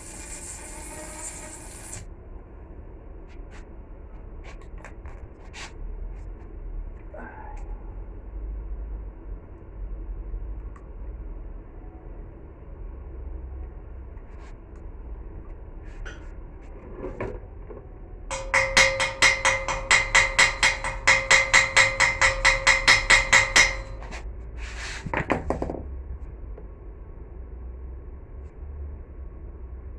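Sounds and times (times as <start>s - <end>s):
scattered knocks: 18.3s - 24.2s, 25.1s - 25.9s
steel being struck ringing: 18.3s - 24.2s.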